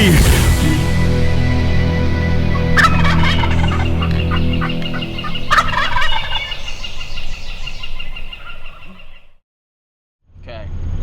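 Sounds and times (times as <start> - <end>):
background music: 0.0 - 6.7
wild turkey gobbling: 1.4 - 9.4.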